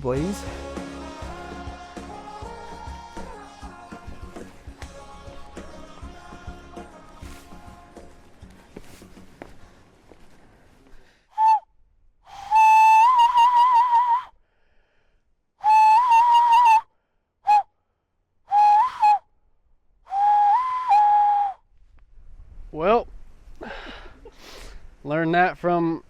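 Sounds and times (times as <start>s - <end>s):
loud whistling: 12.3s - 14.3s, 15.6s - 16.8s, 18.5s - 19.2s, 20.1s - 21.6s.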